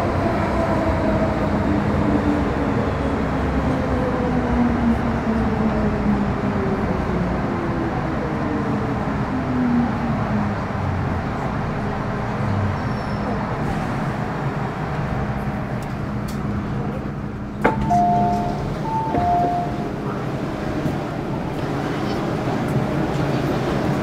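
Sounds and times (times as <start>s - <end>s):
train wheels rumbling in tunnel: 0.0s - 24.0s
two-note chime: 17.7s - 19.8s.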